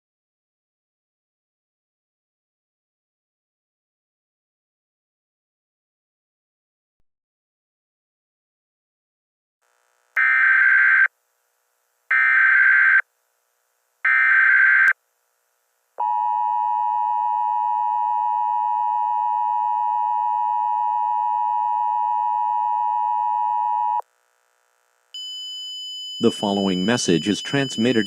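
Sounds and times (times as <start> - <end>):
data tone bursts: 25.2 - 28.0
two-tone attention signal: 25.2 - 28.0.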